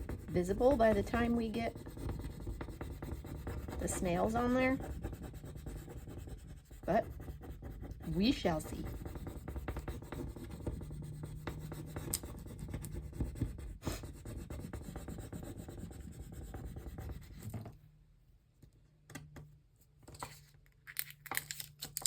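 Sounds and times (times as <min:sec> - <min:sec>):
scratchy rubbing on paper: 0:00.0 - 0:17.6.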